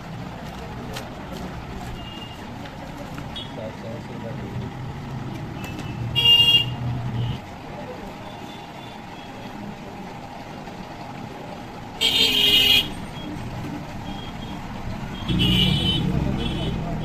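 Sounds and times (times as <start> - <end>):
engine rumble of passing vehicle: 0.0 - 17.0
street traffic: 0.0 - 17.0
vehicle horn tooting: 5.6 - 7.4, 15.1 - 16.9.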